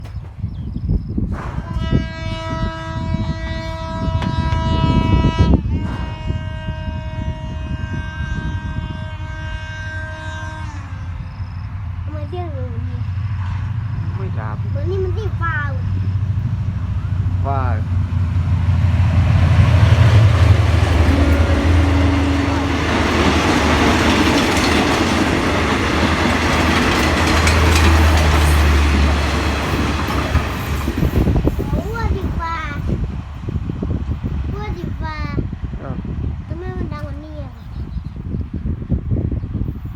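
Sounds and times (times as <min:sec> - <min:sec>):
train rumbling: 0:00.0 - 0:39.9
locomotive air horn blasts: 0:01.4 - 0:11.4, 0:19.6 - 0:25.2.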